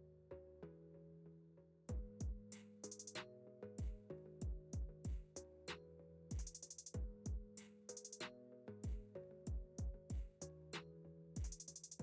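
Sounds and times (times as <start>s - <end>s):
bass drum kicks: 1.9s - 2.5s, 3.8s - 5.3s
hi-hats: 2.5s - 3.3s, 6.3s - 7.0s, 7.6s - 8.3s, 11.4s - 12.0s.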